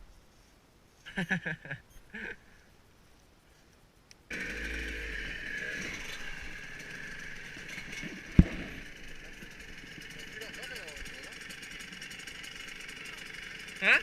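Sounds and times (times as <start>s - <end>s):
motorcycle engine running: 4.3s - 14.0s.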